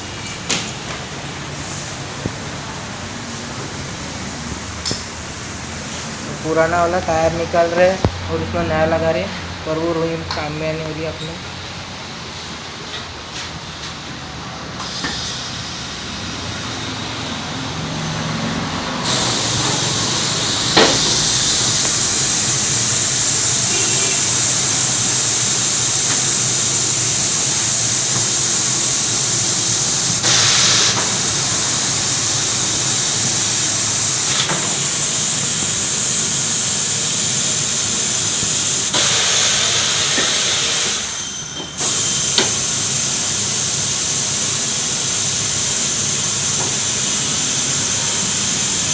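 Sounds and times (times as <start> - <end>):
compressed air hissing: 14.8 - 48.9.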